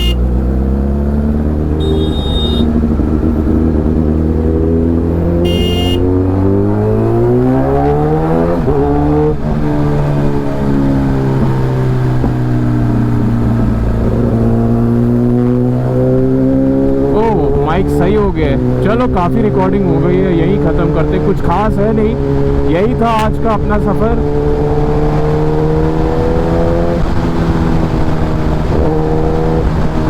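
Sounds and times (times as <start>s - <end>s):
motorcycle engine accelerating: 0.0s - 30.0s
high beep: 1.8s - 2.7s.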